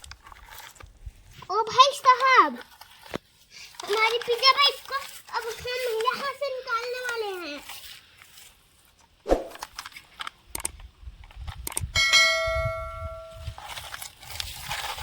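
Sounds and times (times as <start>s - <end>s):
bell-like ding: 12.0s - 13.4s.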